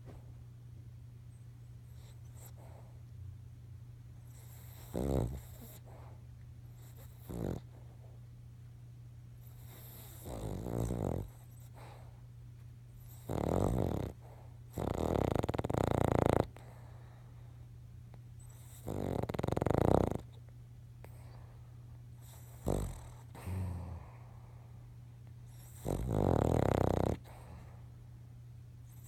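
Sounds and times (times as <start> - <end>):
dog snoring: 1.8 - 3.0, 4.2 - 8.2, 9.4 - 12.2, 13.0 - 17.3, 18.4 - 21.6, 22.2 - 24.7, 25.4 - 27.9.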